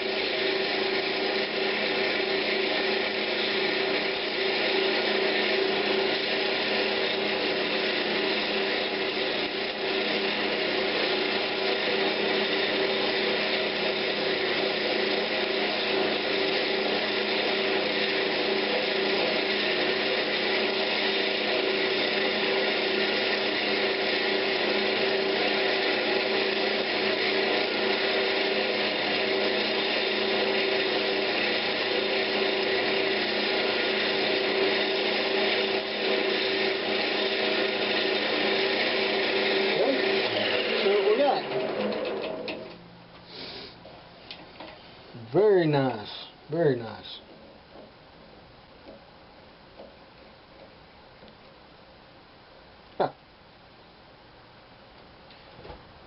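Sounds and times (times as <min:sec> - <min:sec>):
wood lathe motor hum: 0:00.0 - 0:43.7
sandpaper hissing on spinning wood: 0:43.3 - 0:43.8.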